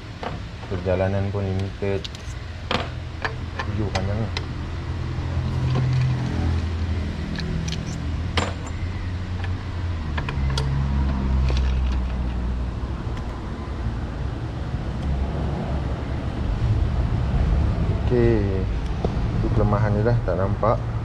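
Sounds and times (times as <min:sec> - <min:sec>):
sharp metallic clinks: 0:07.3 - 0:09.0.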